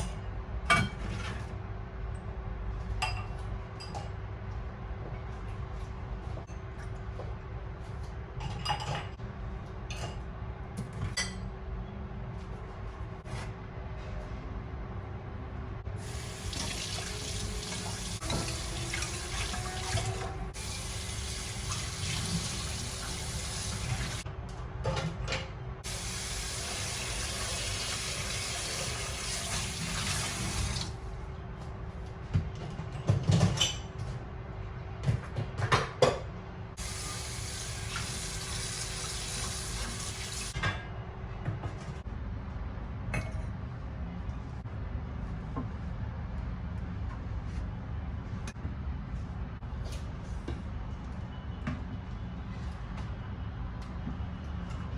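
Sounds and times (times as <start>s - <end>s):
tap water running into sink: 16.0s - 24.2s, 25.9s - 30.9s, 36.8s - 40.5s.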